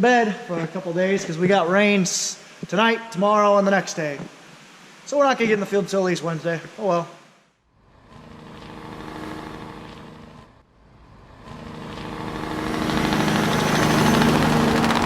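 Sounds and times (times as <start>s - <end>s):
large vehicle engine running: 7.9s - 15.0s.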